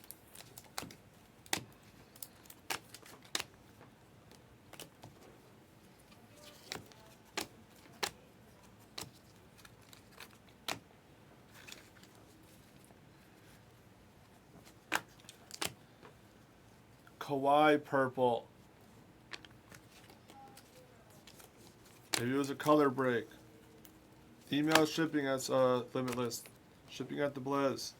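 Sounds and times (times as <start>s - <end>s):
trading cards clicking and snapping: 0.1s - 3.6s, 8.9s - 10.8s, 14.9s - 15.8s, 19.3s - 22.4s, 24.5s - 25.0s, 26.0s - 26.5s.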